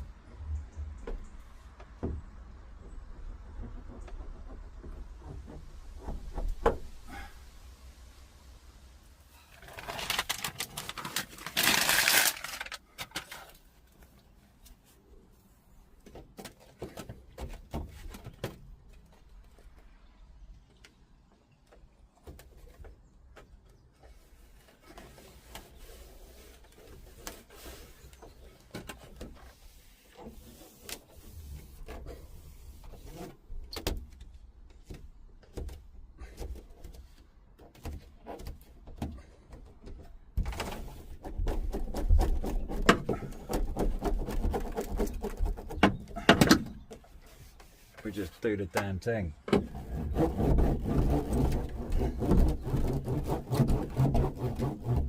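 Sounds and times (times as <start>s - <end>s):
mat rubbing and thudding: 49.5s - 55.0s.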